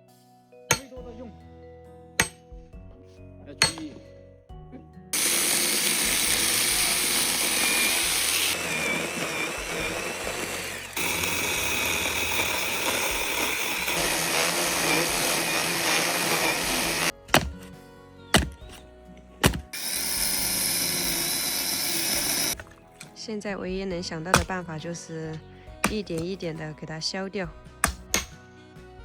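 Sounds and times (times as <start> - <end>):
axe chopping root: 0.7 - 0.9, 2.2 - 2.4, 3.6 - 4.0, 13.2 - 17.7, 18.3 - 18.8, 19.4 - 19.8, 24.3 - 24.6, 25.8 - 26.4, 27.8 - 28.4
electric chainsaw cutting: 5.2 - 17.6, 19.4 - 22.7.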